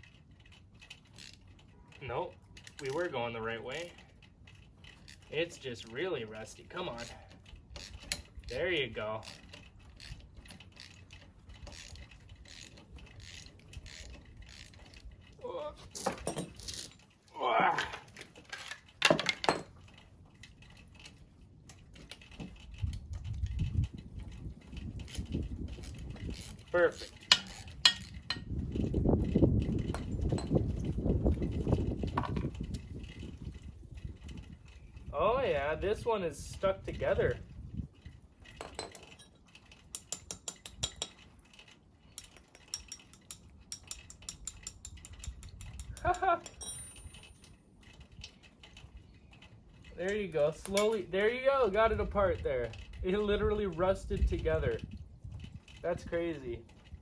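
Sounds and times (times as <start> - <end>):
metal tools clinking: 0.0 - 23.4, 24.2 - 30.9, 35.6 - 55.0.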